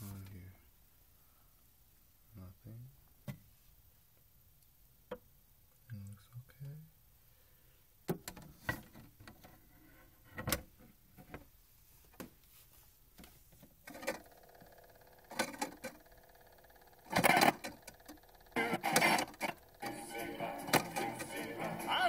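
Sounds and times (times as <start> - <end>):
record player being handled: 13.1 - 14.7, 15.3 - 16.0, 17.1 - 22.0
turntable steady pitched tone: 15.3 - 22.0.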